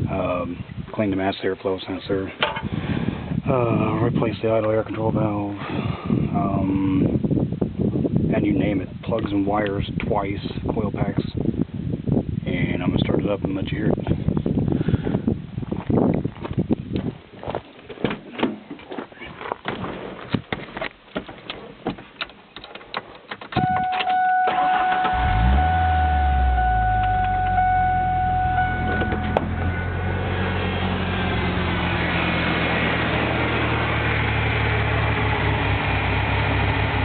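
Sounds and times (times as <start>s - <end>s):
electronic warning tone: 23.6s - 30.2s
misfiring engine idling: 29.3s - 37.0s.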